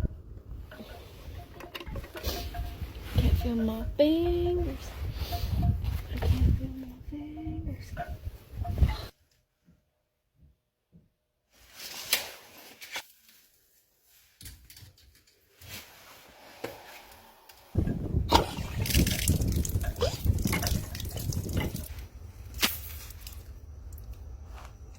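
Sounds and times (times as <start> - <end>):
hose water running: 17.8 - 22.1
water drips and splashes: 17.8 - 24.1.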